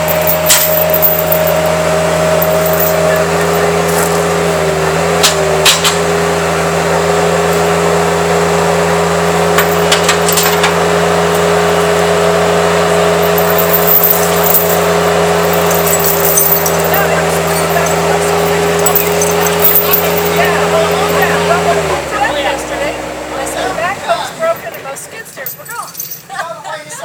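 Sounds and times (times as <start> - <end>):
sharp clinks and knocks: 0.0 - 4.3, 9.5 - 10.8, 13.2 - 21.4, 24.6 - 26.3
heavy equipment engine idling: 0.0 - 25.5.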